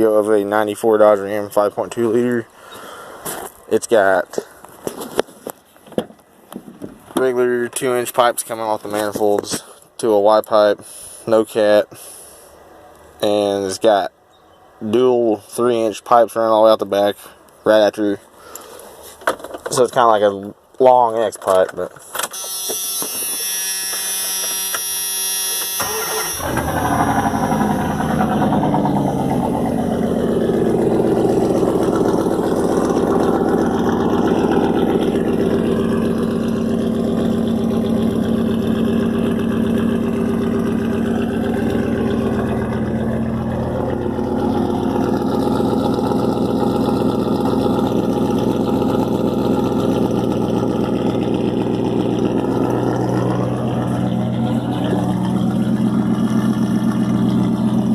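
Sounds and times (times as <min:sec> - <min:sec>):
starter cranking engine: 0:22.3 - 0:57.9
loud vee eight engine idling: 0:23.4 - 0:57.9.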